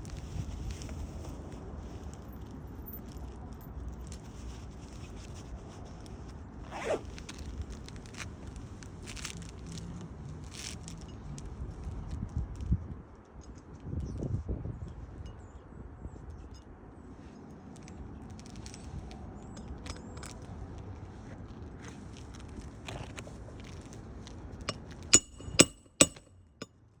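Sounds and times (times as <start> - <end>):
wind rumble on microphone: 0.0 - 25.6
zip-like rasp: 6.7 - 7.2.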